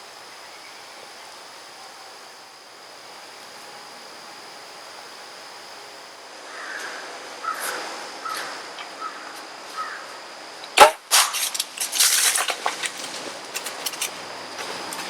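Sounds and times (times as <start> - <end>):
bowstring release crack: 10.7 - 12.6.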